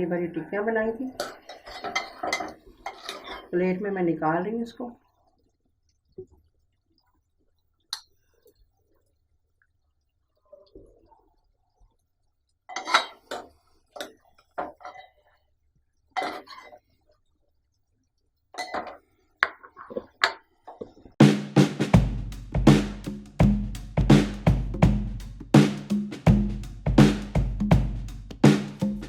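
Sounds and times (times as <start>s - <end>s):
utensils clinking on a plate: 1.2s - 3.5s, 12.7s - 13.4s, 18.6s - 19.0s
music with drums and bass: 21.2s - 29.0s.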